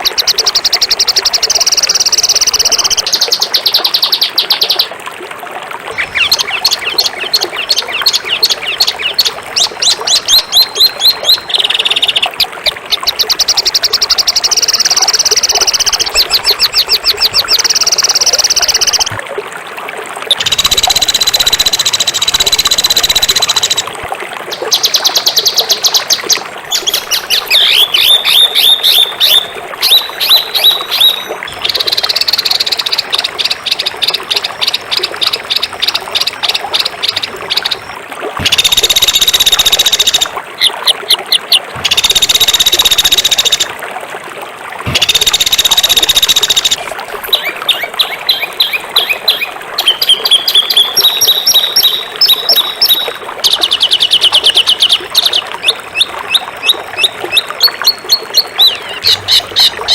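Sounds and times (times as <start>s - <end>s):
songbird rapid trills: 6.0s - 19.2s, 24.6s - 43.7s.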